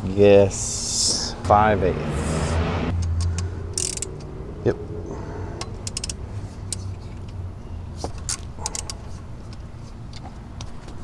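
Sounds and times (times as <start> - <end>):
steady low rumble: 0.0 - 9.5
socket ratchet clicking: 3.7 - 4.2, 5.8 - 6.9, 8.1 - 9.0.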